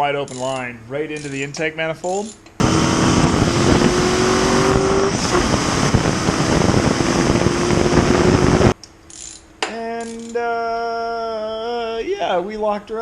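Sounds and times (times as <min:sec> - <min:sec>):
engine running at high revs: 0:02.6 - 0:08.8.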